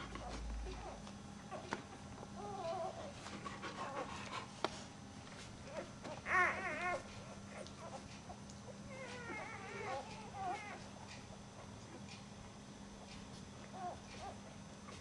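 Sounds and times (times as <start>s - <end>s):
puppies whimpering and squeaking: 0.2s - 1.7s, 2.4s - 4.1s, 5.6s - 12.0s, 13.7s - 15.0s.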